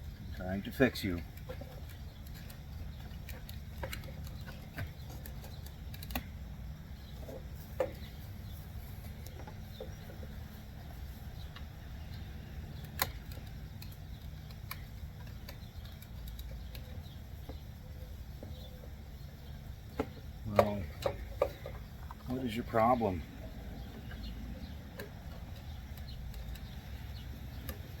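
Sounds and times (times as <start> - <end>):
steady low hum: 0.0 - 28.0
clicks and rattles of connector: 12.8 - 17.5.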